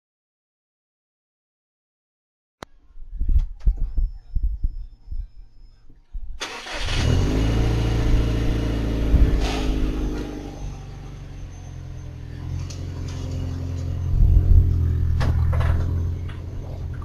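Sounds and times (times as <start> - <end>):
irregular low thumps: 3.0 - 6.4, 8.1 - 10.1, 14.0 - 17.0
car engine starting and running: 6.4 - 17.0.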